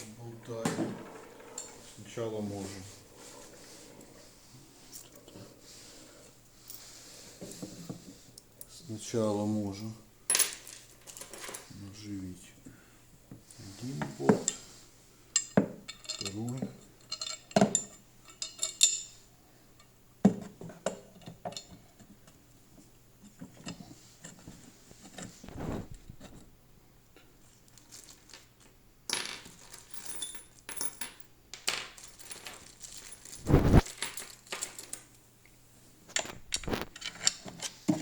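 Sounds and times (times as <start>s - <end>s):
metal bolts and tools clinking: 0.4s - 2.1s, 15.4s - 19.1s.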